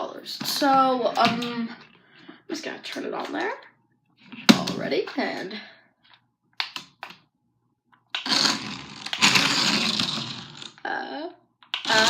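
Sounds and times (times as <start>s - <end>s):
toy car motor whirring: 8.2s - 10.8s.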